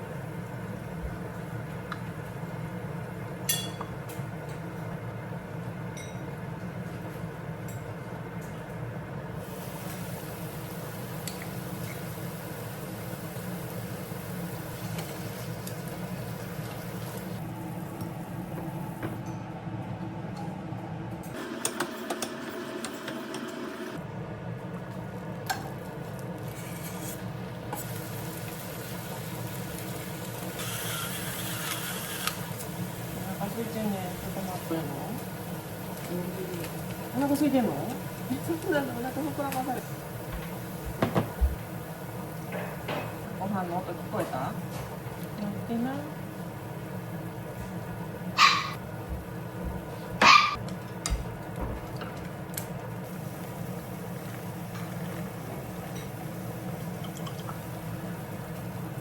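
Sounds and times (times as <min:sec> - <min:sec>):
kitchenware clinking: 0:03.5 - 0:04.0, 0:06.0 - 0:06.3
steady hum: 0:17.2 - 0:28.4
utensil scraping in pan: 0:26.5 - 0:27.3, 0:30.6 - 0:32.4.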